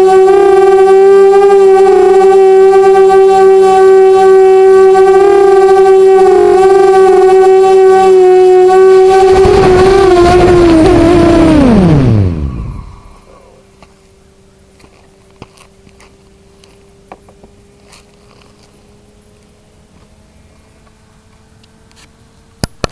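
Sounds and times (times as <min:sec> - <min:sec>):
electric motors whining: 0:00.0 - 0:13.4.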